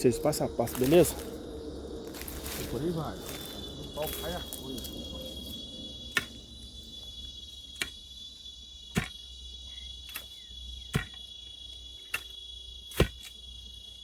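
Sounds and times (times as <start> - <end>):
cricket trill: 0.0 - 14.0
digging tool thudding into soil: 8.9 - 9.2, 10.1 - 11.2, 12.9 - 13.4.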